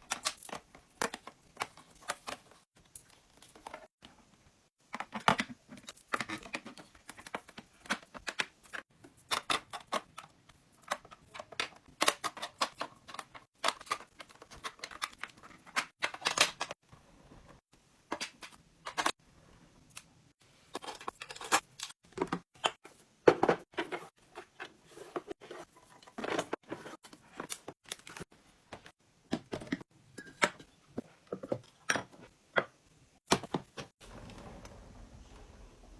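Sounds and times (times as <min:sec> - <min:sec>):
clicks and knocks of items: 0:04.9 - 0:16.8, 0:17.4 - 0:19.2, 0:20.7 - 0:32.7.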